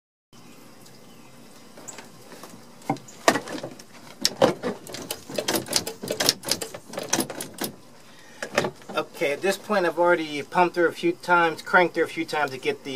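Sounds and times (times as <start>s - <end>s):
faint steady hiss: 0.4s - 12.9s
sharp clicks and knocks: 2.8s - 7.8s.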